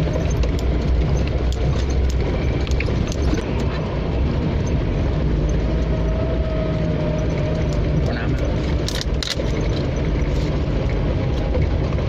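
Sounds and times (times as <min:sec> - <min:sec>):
small knocks and rattles: 0:00.0 - 0:03.8
vehicle engine and tyres rumbling: 0:00.0 - 0:12.0.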